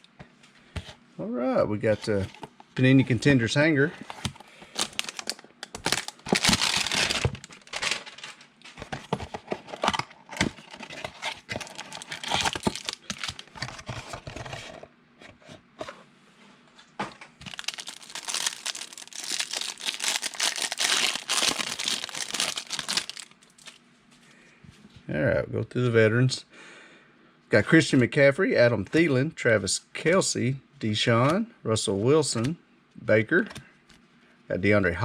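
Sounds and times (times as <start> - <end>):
packaging tearing and crinkling: 4.7 - 8.4, 9.8 - 14.2, 17.4 - 23.8.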